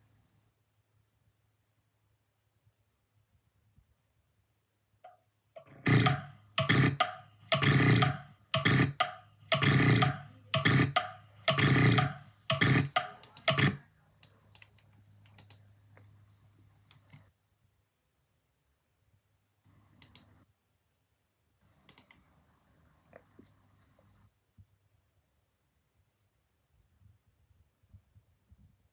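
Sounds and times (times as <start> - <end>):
rough throat bursts: 5.6 - 13.8
faint clicks: 12.5 - 16.1, 19.6 - 20.4, 21.8 - 22.3.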